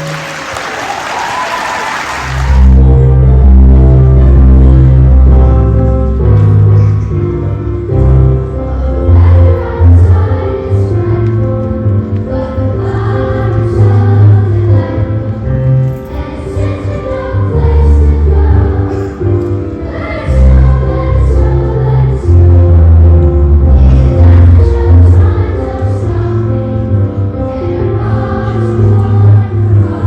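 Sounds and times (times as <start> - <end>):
musical accompaniment with bass: 2.3 - 30.0
children's chorus singing: 8.7 - 22.8, 23.7 - 30.0.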